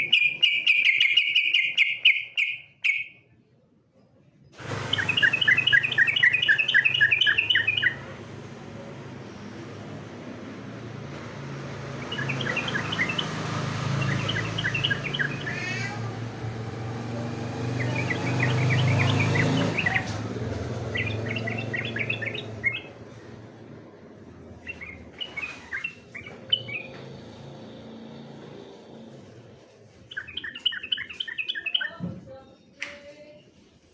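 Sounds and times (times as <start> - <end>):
bird singing sharp chirps: 0.0 - 3.2, 4.7 - 8.2, 11.8 - 23.4, 24.5 - 28.2, 30.1 - 32.0.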